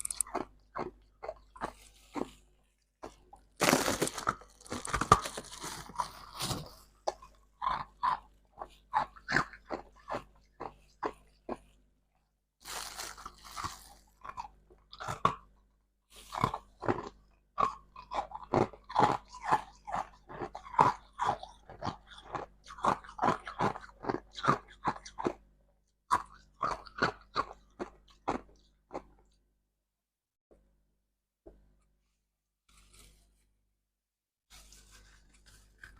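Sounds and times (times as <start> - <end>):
ice being chewed: 0.0 - 11.8, 12.6 - 15.6, 16.2 - 25.4, 26.1 - 29.4, 34.6 - 35.9.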